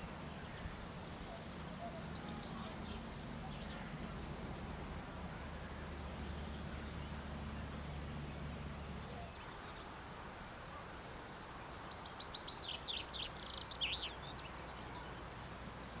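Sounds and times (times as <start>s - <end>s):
outdoor background noise: 0.0s - 16.0s.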